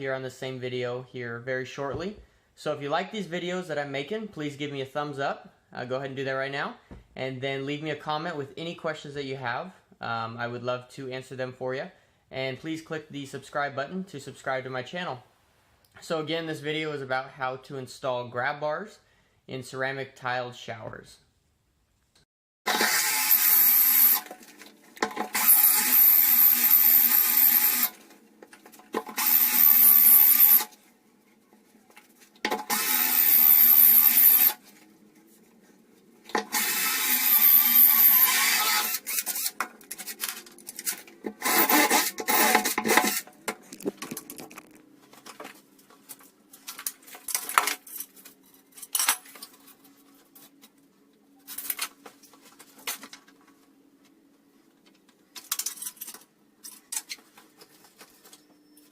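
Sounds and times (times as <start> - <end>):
power drill boring into tile: 22.7 - 24.3, 25.2 - 28.0, 29.1 - 30.7, 32.6 - 34.6, 36.4 - 39.6, 41.4 - 43.3.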